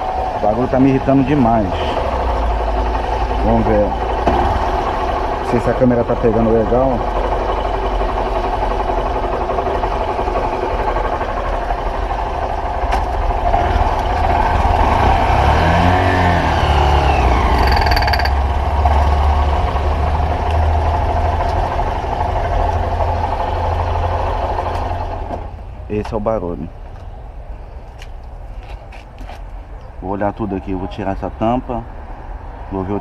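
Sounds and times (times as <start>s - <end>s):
motorcycle engine running under load: 1.7s - 25.3s
metal-on-metal rattle: 17.5s - 18.5s.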